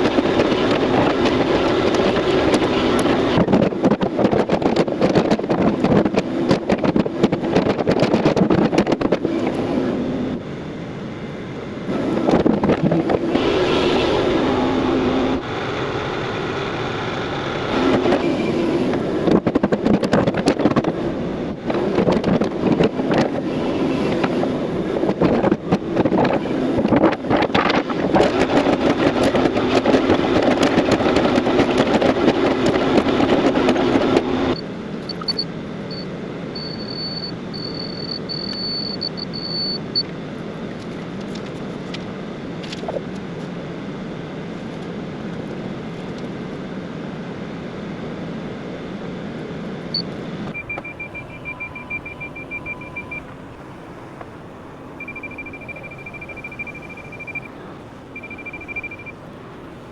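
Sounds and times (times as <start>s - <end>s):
excavator diesel engine working: 0.0s - 35.4s, 50.4s - 59.9s.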